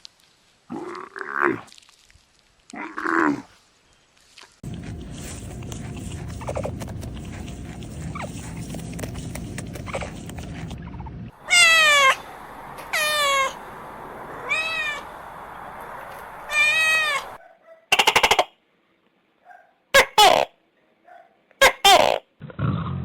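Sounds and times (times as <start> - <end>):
steady background rumble: 4.6 - 17.4
cat meowing: 11.4 - 12.2, 12.8 - 13.6, 14.4 - 15.0, 16.5 - 17.4.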